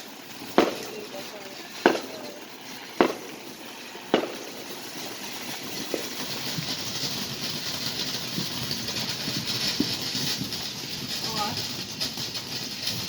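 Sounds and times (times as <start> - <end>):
firework bangs: 0.0 - 13.0
firework hissing crackle: 0.0 - 13.0.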